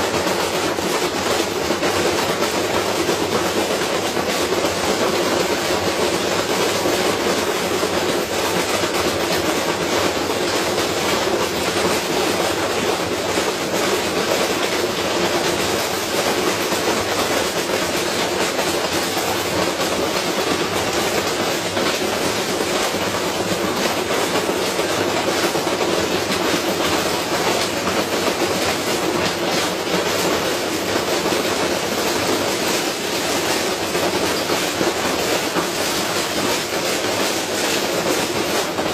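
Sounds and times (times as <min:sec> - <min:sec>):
washing machine rattling: 0:00.0 - 0:38.9.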